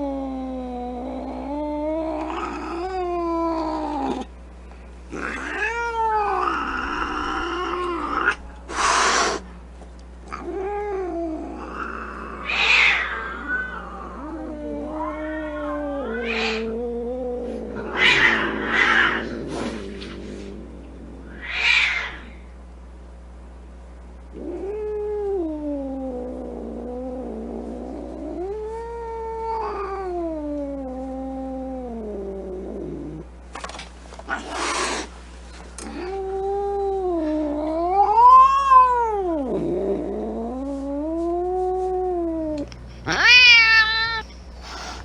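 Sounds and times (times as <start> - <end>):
cat yowling and growling: 0.0 - 4.3, 5.1 - 9.4, 10.3 - 20.5, 21.1 - 22.4, 24.3 - 33.2, 35.8 - 45.0
cat hissing: 5.1 - 9.6, 11.4 - 22.4, 34.3 - 35.2, 37.1 - 45.0.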